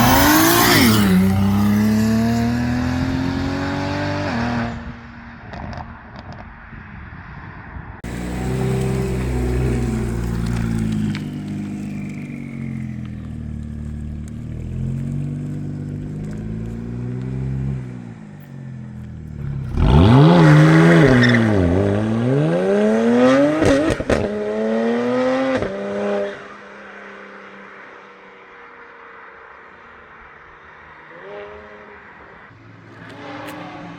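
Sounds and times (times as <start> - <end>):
car exhaust revving: 0.0 - 4.1, 8.0 - 17.2, 19.3 - 24.5.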